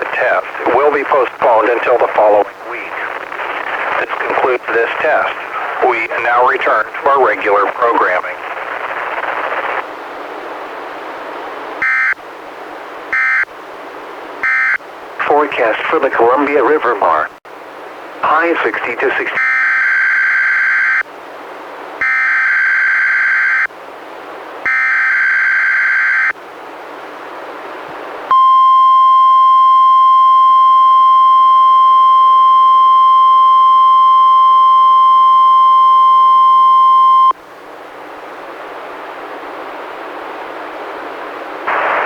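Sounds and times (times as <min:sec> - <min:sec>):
radio static: 0:00.0 - 0:09.9, 0:15.2 - 0:17.4, 0:18.2 - 0:21.0, 0:41.6 - 0:42.0
steady warning alarm tone: 0:11.8 - 0:12.2, 0:13.1 - 0:13.5, 0:14.4 - 0:14.8, 0:19.4 - 0:21.0, 0:22.0 - 0:23.7, 0:24.7 - 0:26.4, 0:28.3 - 0:37.4.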